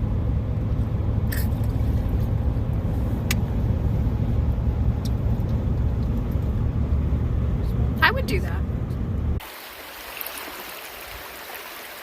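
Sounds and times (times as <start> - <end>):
car driving rumble: 0.0 - 9.4.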